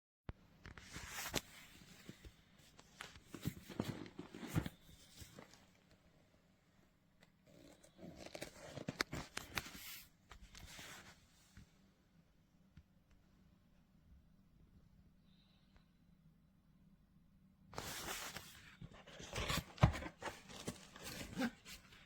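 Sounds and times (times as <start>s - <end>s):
rustling and scraping: 0.8s - 5.8s, 17.8s - 22.0s.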